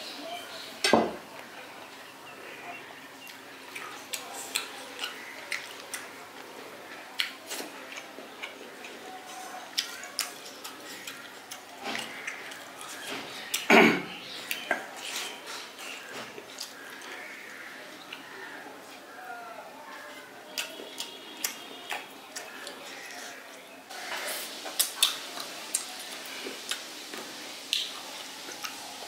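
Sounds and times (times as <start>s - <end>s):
person chewing: 3.3s - 6.1s, 6.9s - 13.7s, 14.4s - 17.2s, 20.5s - 23.3s, 24.0s - 28.8s.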